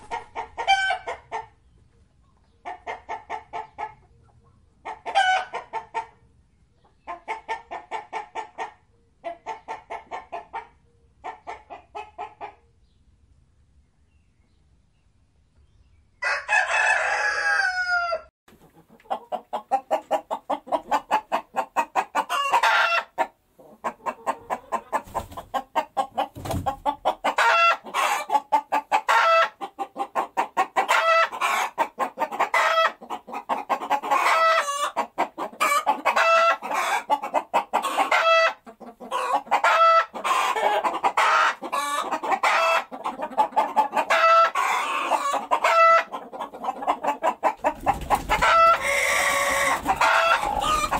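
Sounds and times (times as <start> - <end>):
hens clucking and cackling: 0.0 - 12.7, 16.2 - 50.9
rooster crowing: 16.2 - 18.3, 48.5 - 50.9.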